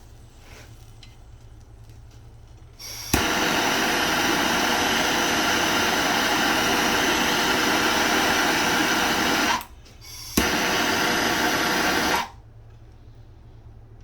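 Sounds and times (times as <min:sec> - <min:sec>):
torch flame hissing: 0:02.8 - 0:12.4
torch ignition click: 0:02.8 - 0:12.4.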